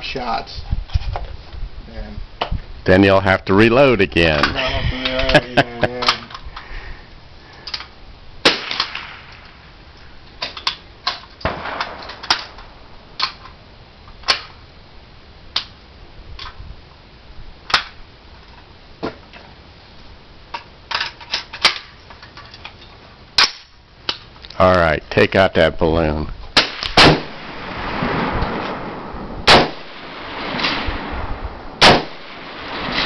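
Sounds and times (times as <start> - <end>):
rifle shots echoing: 8.4 - 9.7, 11.4 - 13.4, 26.6 - 33.0.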